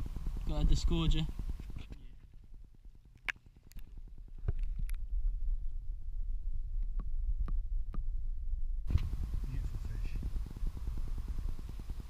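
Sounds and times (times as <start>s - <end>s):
low rumble: 0.0s - 12.0s.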